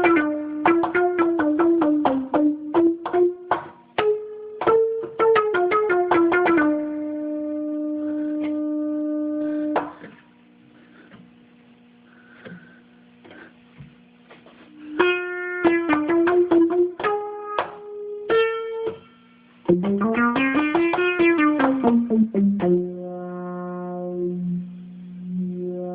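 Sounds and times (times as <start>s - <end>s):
synthesizer notes: 0.0s - 10.2s, 14.8s - 19.0s, 19.6s - 25.9s
faint low hum: 0.0s - 25.9s.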